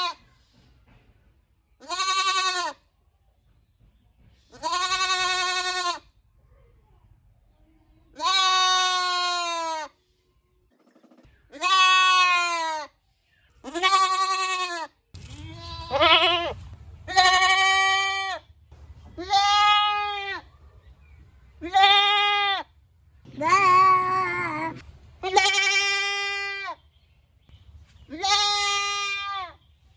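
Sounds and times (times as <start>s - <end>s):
goat bleating: 1.8s - 2.8s, 4.6s - 6.0s, 8.2s - 9.9s, 11.5s - 12.9s, 13.6s - 18.4s, 19.1s - 20.5s, 21.6s - 22.6s, 23.3s - 26.8s, 28.1s - 29.6s.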